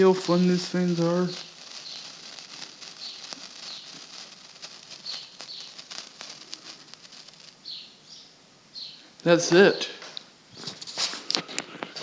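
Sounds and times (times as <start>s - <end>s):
firework crackling and fizzing: 0.0s - 8.1s
birds chirping: 0.0s - 10.6s.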